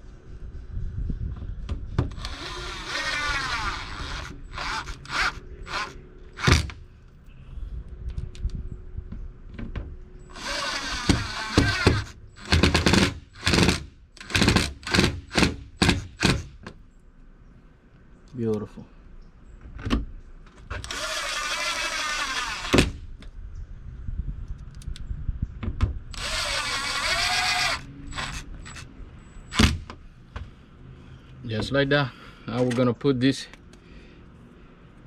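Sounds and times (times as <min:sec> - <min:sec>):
cordless drill spinning up: 0:02.2 - 0:06.5, 0:10.3 - 0:12.5, 0:20.8 - 0:22.8, 0:26.1 - 0:28.8
drill trigger pulses: 0:02.2 - 0:06.7, 0:20.8 - 0:22.8, 0:26.1 - 0:28.8.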